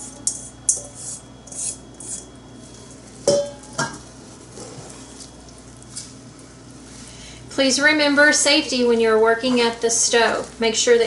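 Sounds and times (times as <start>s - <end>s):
kitchen utensils scraping and clinking: 0.0s - 2.3s.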